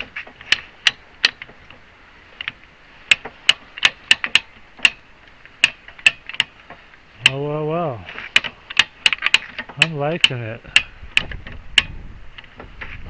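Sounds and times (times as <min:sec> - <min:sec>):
ratchet clicking: 0:02.4 - 0:06.6, 0:08.4 - 0:12.6.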